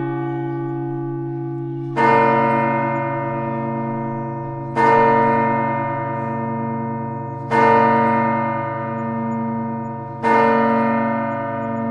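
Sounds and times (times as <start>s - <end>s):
church bell striking: 0.0s - 11.9s.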